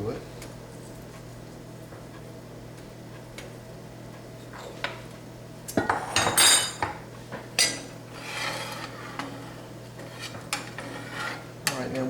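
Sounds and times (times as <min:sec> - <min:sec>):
utensil scraping a cooking pan: 0:07.8 - 0:11.8.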